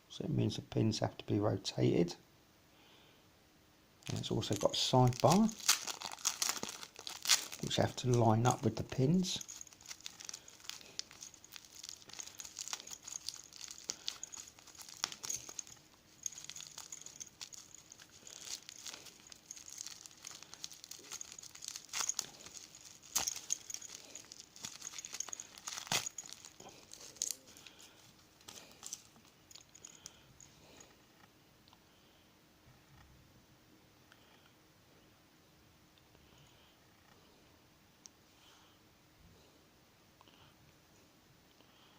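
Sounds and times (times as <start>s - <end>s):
plastic packaging crinkling: 4.0s - 30.1s.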